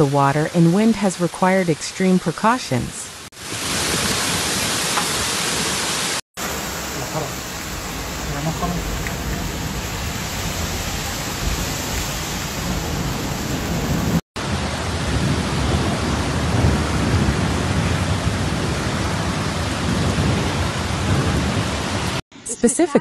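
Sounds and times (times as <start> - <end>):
heavy rain pouring: 3.2 - 22.2
low rumble: 6.4 - 18.6.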